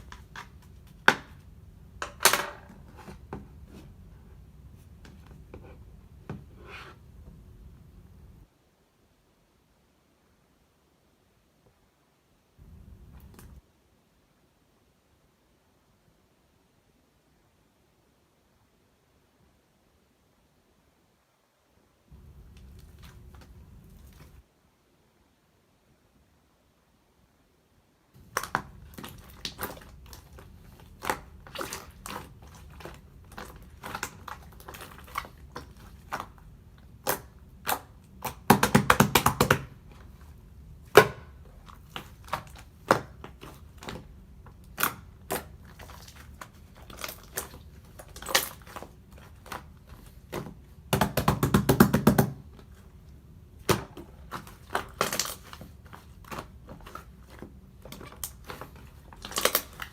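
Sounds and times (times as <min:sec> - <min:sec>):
slime squishing with clicking pops: 0:28.2 - 0:59.9.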